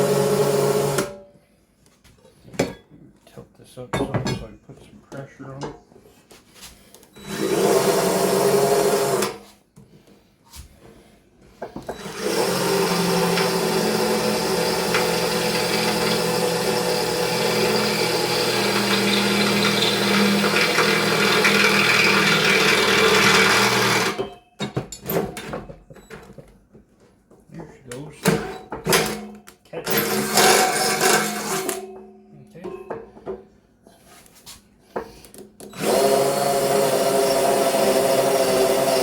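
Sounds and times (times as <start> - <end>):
electric drill boring metal: 0.0 - 1.1, 7.2 - 9.4, 11.9 - 24.2, 29.9 - 31.8, 35.7 - 39.0.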